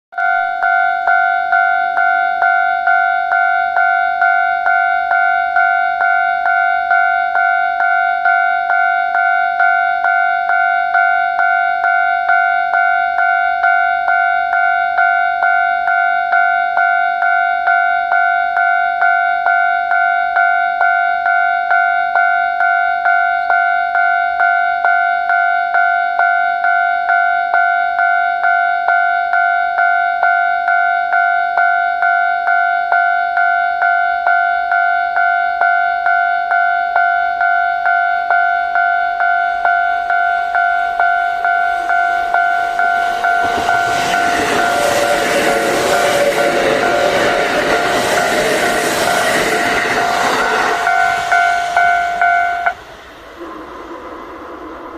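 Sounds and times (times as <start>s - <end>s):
level crossing warning bell: 0.2s - 54.9s.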